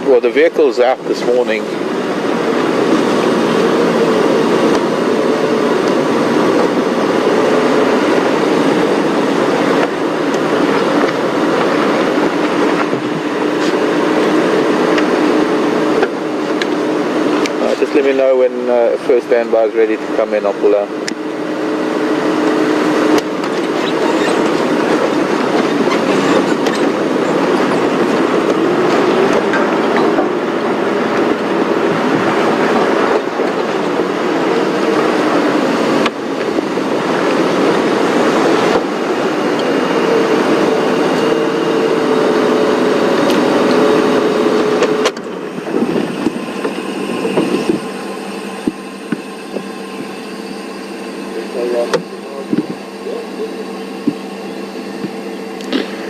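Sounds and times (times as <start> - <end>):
vehicle engine over rough ground: 0.0 - 56.0
wavering whining tones: 0.0 - 56.0.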